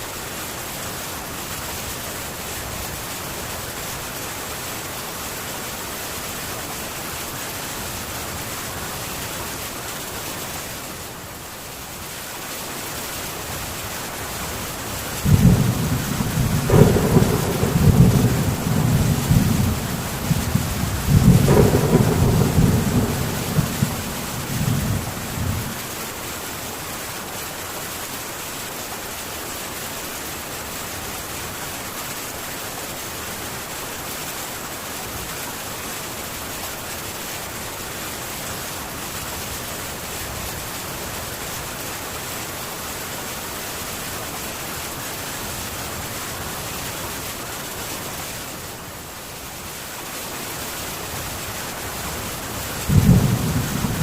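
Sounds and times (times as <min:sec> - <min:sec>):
heavy rain on a tin roof: 0:00.0 - 0:54.0
low thunder rumble: 0:15.2 - 0:25.9, 0:52.8 - 0:54.0.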